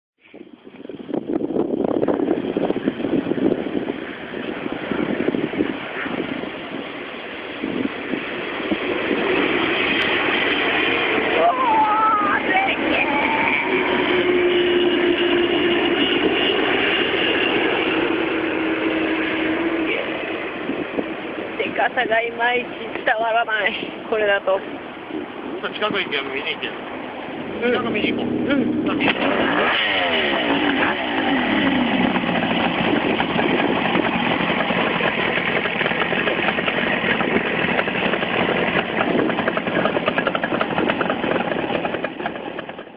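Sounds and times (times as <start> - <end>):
jet airliner engine noise: 0.2 - 42.9
motorcycle engine idling: 30.2 - 42.9.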